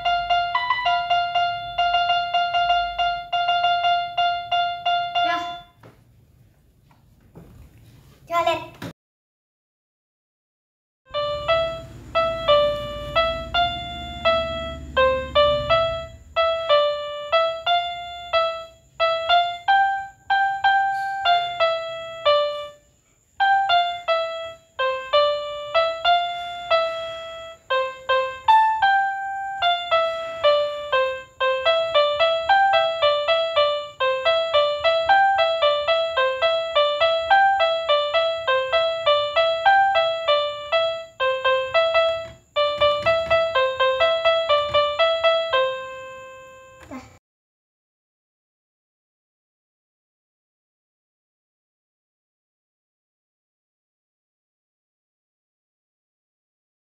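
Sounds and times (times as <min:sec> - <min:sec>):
electronic keyboard playing short notes: 0:00.0 - 0:05.8, 0:11.1 - 0:22.8.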